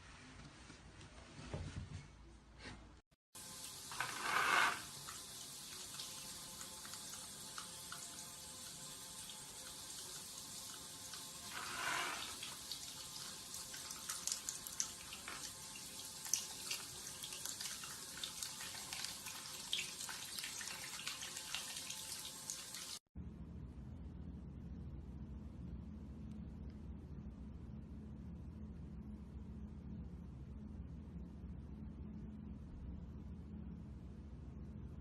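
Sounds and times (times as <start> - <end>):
water running with splashes: 3.4 - 23.0.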